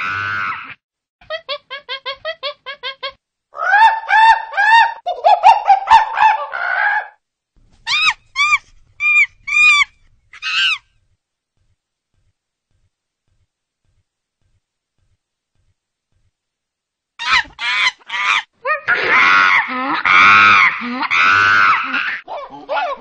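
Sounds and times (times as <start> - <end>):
bird calling: 7.9 - 10.9.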